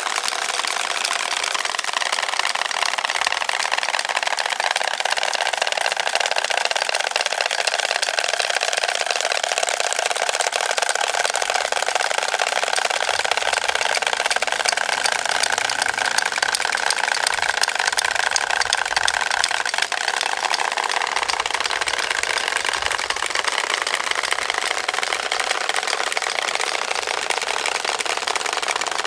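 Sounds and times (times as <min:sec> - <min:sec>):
wooden rattles clattering: 0:12.6 - 0:29.0.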